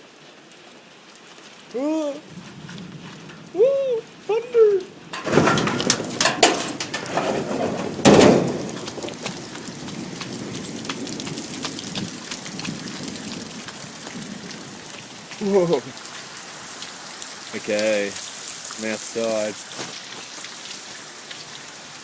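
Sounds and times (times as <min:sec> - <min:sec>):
heavy rain pouring: 0:00.0 - 0:22.0
raindrops spattering: 0:00.1 - 0:22.0
loud sudden crash: 0:05.2 - 0:08.8.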